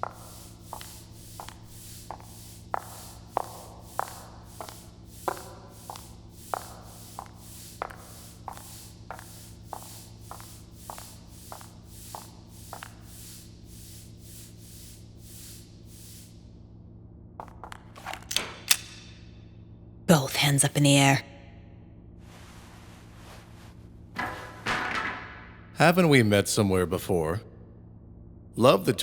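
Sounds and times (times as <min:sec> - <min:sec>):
footsteps: 0:00.0 - 0:16.2, 0:22.3 - 0:25.1
low ambient hum: 0:00.0 - 0:29.0.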